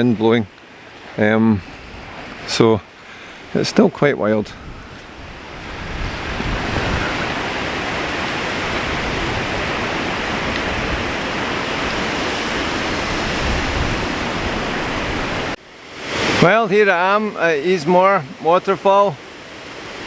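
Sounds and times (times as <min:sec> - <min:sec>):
waterfall rushing: 0:04.6 - 0:20.0.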